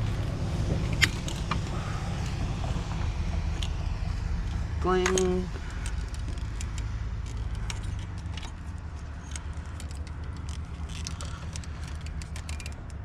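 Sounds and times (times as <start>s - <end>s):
steady low hum: 0.0s - 13.0s
metallic clicks of hand tools: 5.0s - 13.0s.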